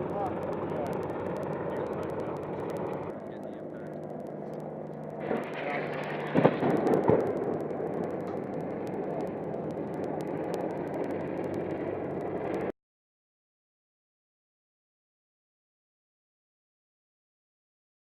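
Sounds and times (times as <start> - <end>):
steady noisy rumble: 0.0 - 12.7
heavy blasts: 5.1 - 12.7.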